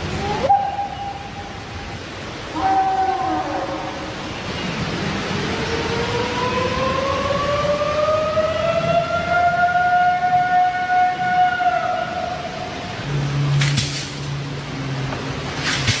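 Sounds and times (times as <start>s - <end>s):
warning siren wailing: 2.5s - 4.2s, 5.1s - 13.0s.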